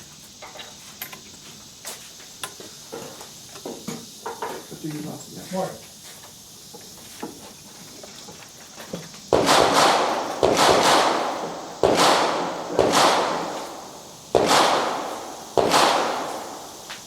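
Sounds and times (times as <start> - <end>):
gunshots echoing: 9.4 - 17.0.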